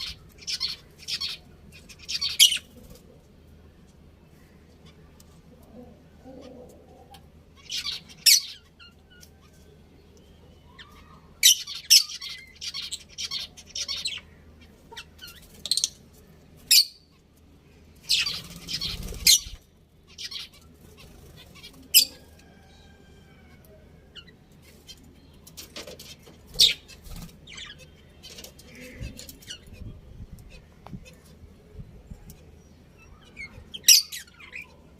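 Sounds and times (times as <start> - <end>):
budgerigars chirping and squawking: 0.0 - 3.0, 7.1 - 9.6, 10.7 - 16.0, 18.0 - 23.0, 24.1 - 31.4, 33.0 - 34.8
quiet bird chatter: 0.0 - 34.9.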